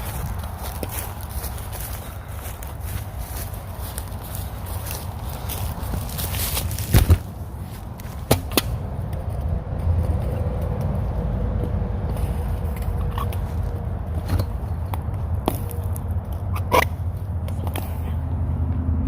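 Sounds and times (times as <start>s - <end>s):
person climbing over fence: 0.0s - 8.7s.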